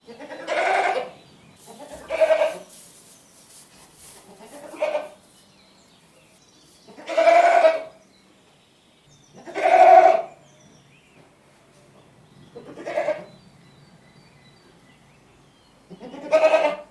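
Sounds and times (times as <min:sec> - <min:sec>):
goat bleating: 0:00.1 - 0:02.7, 0:04.3 - 0:05.2, 0:07.0 - 0:07.9, 0:09.5 - 0:10.3, 0:16.0 - 0:16.9.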